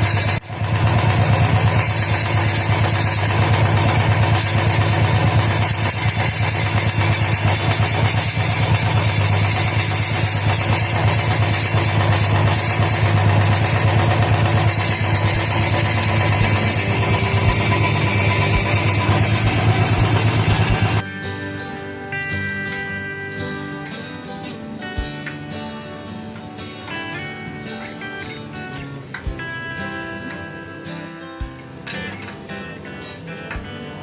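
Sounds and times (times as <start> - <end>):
single-cylinder motorcycle engine running: 0.0 - 21.0.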